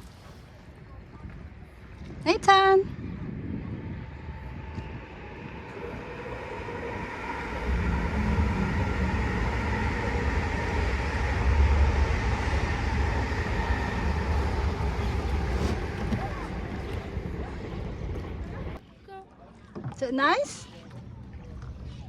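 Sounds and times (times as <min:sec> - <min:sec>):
low mechanical rumble: 0:02.9 - 0:18.8.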